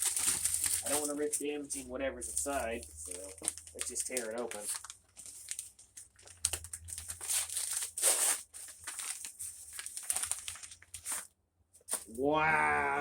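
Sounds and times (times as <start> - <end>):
wrapping paper tearing and crinkling: 0.0 - 11.3.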